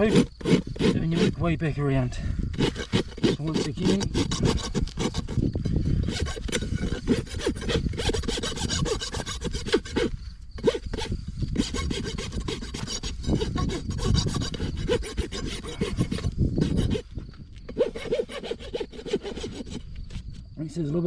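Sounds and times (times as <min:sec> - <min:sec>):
rasp filing a hoof: 0:00.0 - 0:20.4.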